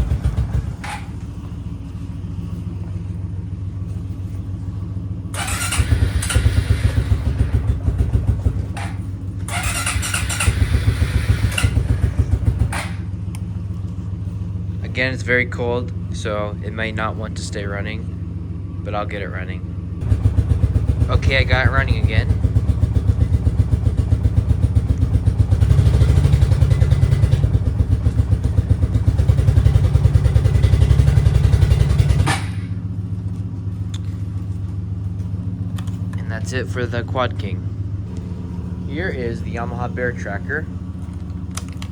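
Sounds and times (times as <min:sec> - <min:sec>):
quad bike engine revving: 0:00.0 - 0:01.1, 0:05.3 - 0:13.1, 0:20.0 - 0:32.8.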